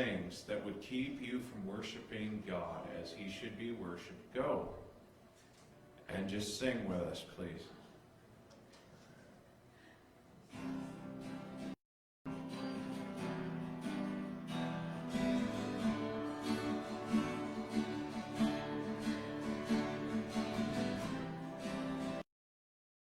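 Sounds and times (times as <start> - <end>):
strummed acoustic guitar: 10.5 - 22.2.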